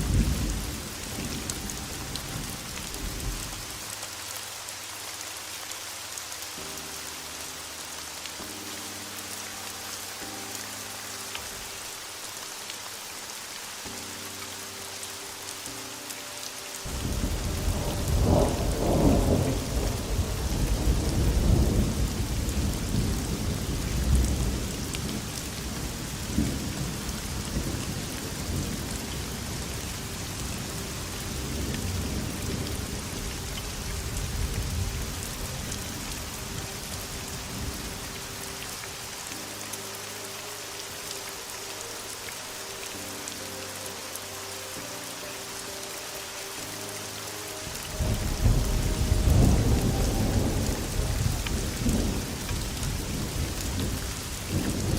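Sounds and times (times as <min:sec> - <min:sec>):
heavy rain: 0:00.0 - 0:54.9
rolling thunder: 0:16.9 - 0:25.3, 0:48.0 - 0:54.9.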